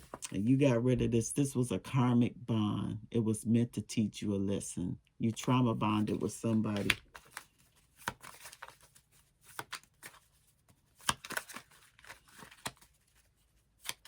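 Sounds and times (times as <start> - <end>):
cards rustling and tapping: 0.0 - 0.3, 5.4 - 14.0.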